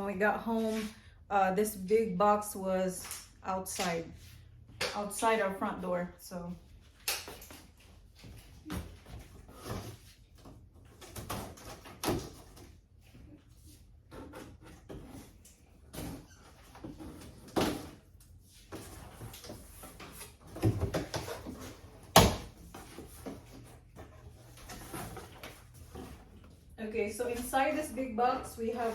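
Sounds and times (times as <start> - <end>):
cardboard scraping and rustling: 13.8 - 28.9.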